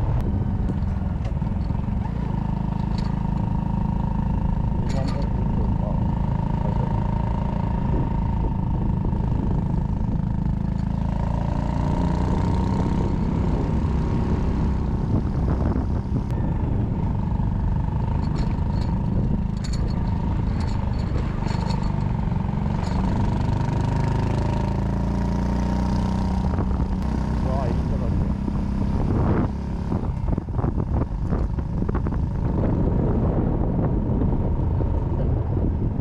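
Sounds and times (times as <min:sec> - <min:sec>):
motorcycle engine running: 0:00.0 - 0:36.0.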